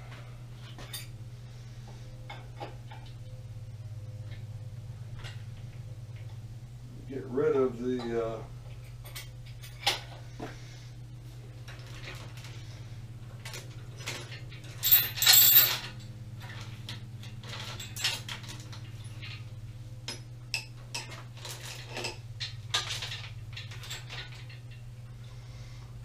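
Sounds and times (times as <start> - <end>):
steady low hum: 0.0 - 26.0
metal tools clinking: 0.6 - 1.1, 7.9 - 10.1, 13.4 - 19.5, 20.1 - 24.8.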